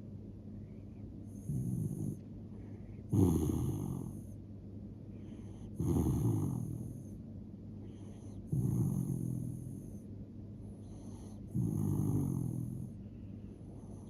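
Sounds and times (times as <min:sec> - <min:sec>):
dog snoring: 0:01.2 - 0:04.4, 0:05.2 - 0:07.2, 0:07.8 - 0:10.1, 0:10.7 - 0:13.0, 0:13.6 - 0:14.0.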